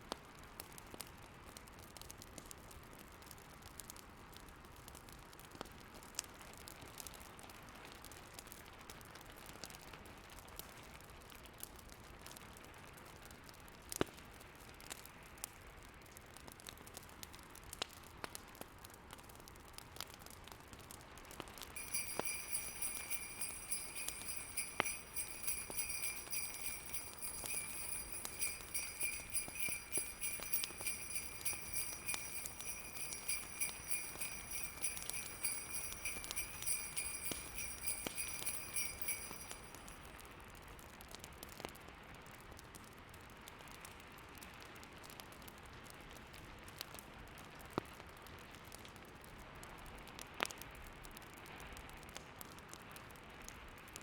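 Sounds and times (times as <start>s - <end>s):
fireplace crackles: 16.0s - 40.2s
snowstorm hiss: 21.8s - 39.5s
sleigh bells jingling: 21.8s - 40.1s.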